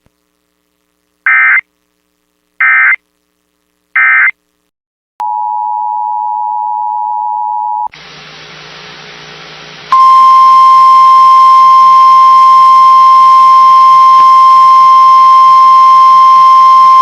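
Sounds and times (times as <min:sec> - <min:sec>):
faint radio hiss: 0:00.0 - 0:04.7.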